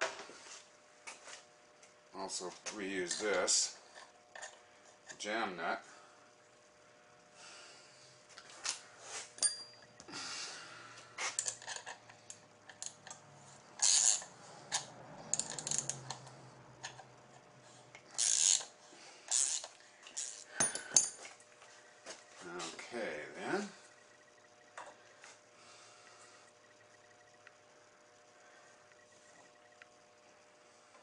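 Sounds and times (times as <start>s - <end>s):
metal tools clinking and scraping: 9.2s - 9.9s, 11.3s - 13.2s, 13.8s - 16.2s, 19.3s - 21.4s.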